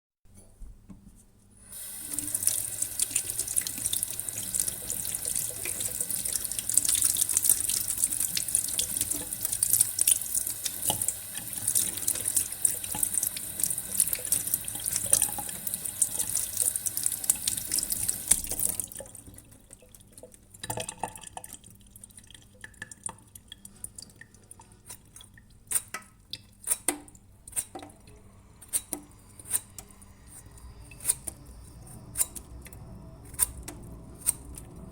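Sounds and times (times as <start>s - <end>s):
tap water running into sink: 1.8s - 21.8s
water drips: 1.8s - 27.2s.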